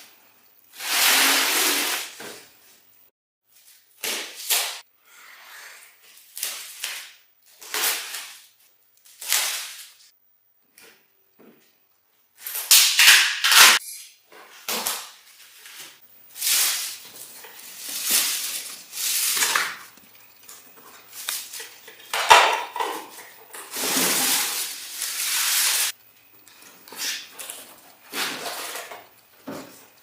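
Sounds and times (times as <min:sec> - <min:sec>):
machine parts clattering and rustling: 0:26.3 - 0:30.0.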